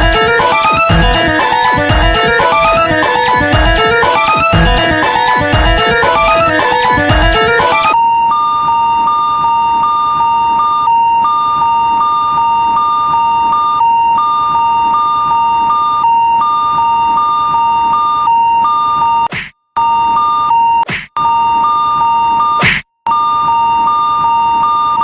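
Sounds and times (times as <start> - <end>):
music: 0.0 - 8.0.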